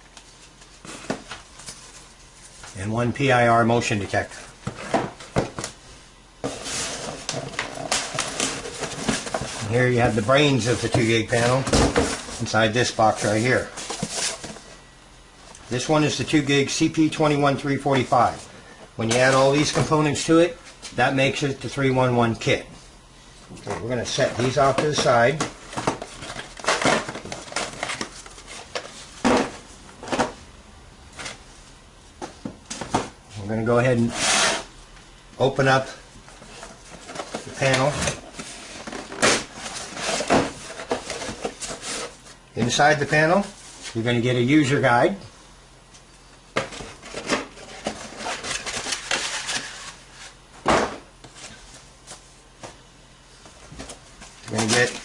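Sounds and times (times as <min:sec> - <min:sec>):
boxes rustling: 0:04.1 - 0:05.8, 0:06.4 - 0:14.8, 0:23.5 - 0:30.4, 0:36.1 - 0:44.0, 0:46.4 - 0:55.0.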